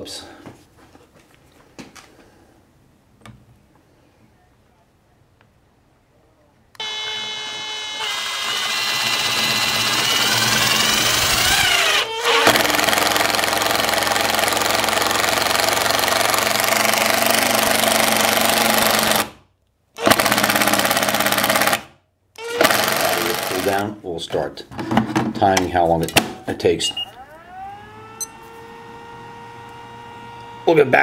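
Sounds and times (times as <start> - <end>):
impact driver motor whine: 6.8 - 17.1, 27.0 - 30.7
impact driver hammering rattle: 12.4 - 19.3, 20.0 - 21.9.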